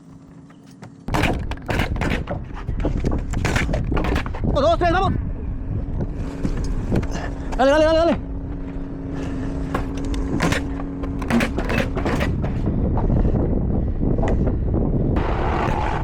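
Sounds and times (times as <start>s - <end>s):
knocks and clicks of construction: 0.0s - 4.6s, 9.7s - 12.7s
steady hum: 0.0s - 16.0s
wind rumbling on microphone: 1.1s - 16.0s.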